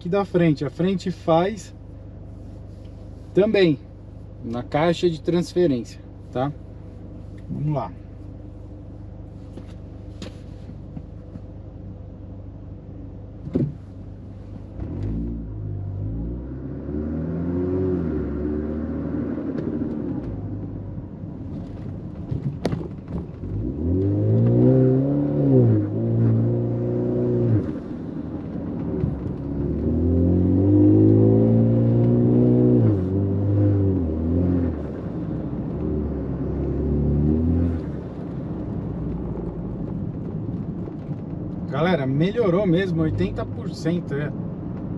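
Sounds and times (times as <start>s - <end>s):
car engine accelerating: 13.4s - 43.6s.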